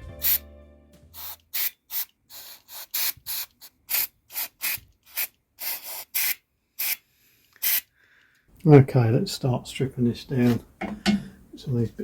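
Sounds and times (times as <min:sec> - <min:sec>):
music: 0:00.0 - 0:01.2
hissing spray bursts: 0:01.1 - 0:07.0, 0:07.6 - 0:07.9.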